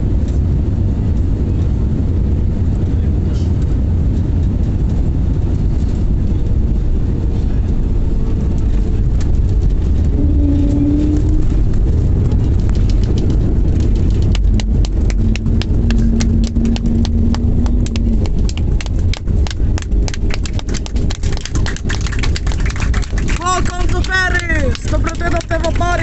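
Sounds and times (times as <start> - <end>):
aircraft cabin rumble: 0.0 - 26.0.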